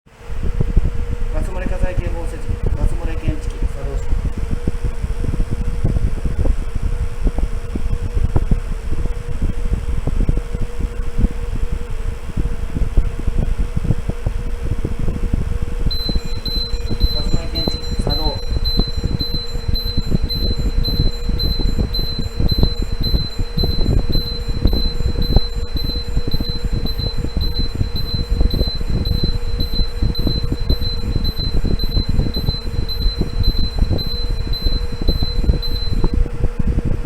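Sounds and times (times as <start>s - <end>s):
faint low hum: 0.2s - 37.0s
low rumble: 9.0s - 37.0s
gas detector alarm beeping: 15.9s - 36.2s.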